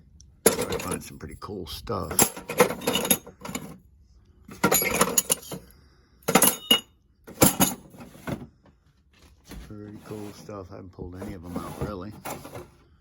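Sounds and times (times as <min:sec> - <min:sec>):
small objects clinking and rattling: 0:04.6 - 0:05.6.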